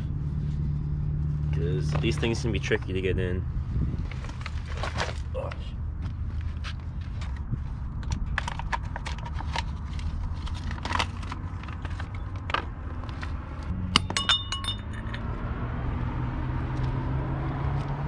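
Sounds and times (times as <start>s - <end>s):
sharp metallic clinks: 13.9s - 15.4s.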